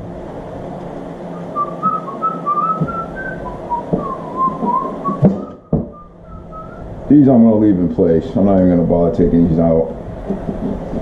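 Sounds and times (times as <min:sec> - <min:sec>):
man whistling a tune: 0:01.3 - 0:06.9.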